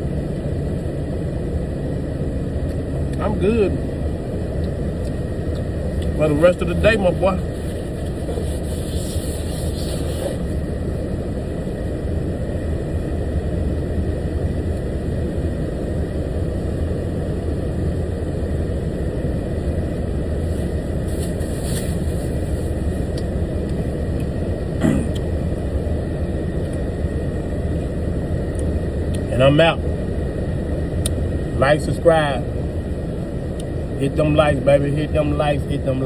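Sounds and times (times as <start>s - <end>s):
truck engine rumbling: 2.4s - 11.7s.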